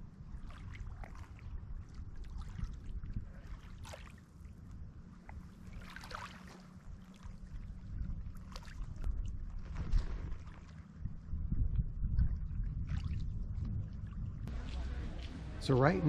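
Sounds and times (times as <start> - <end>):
wind rumble on microphone: 0.0 - 16.0
small waves splashing on shore: 0.2 - 4.5, 5.2 - 11.0.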